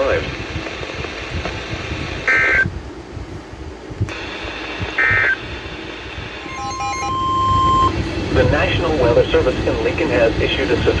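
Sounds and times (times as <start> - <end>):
radio hiss: 0.0 - 2.7, 4.1 - 6.6, 7.9 - 11.0
digital data tone bursts: 6.4 - 8.0
steady alert tone: 6.4 - 8.0.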